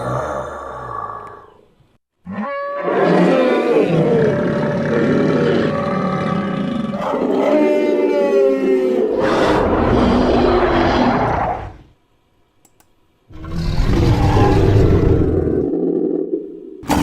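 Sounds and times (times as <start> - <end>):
creature growl: 0.0 - 1.6, 2.3 - 11.9, 13.3 - 16.4
dinosaur roar bellowing: 0.0 - 1.7, 2.3 - 11.9, 13.3 - 16.6.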